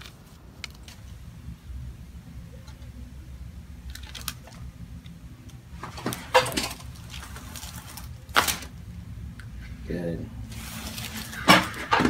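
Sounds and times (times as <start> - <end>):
joint cracking: 0.0 - 1.2, 3.8 - 7.1
low steady hum: 0.0 - 12.0
rustle of movement: 10.4 - 12.0.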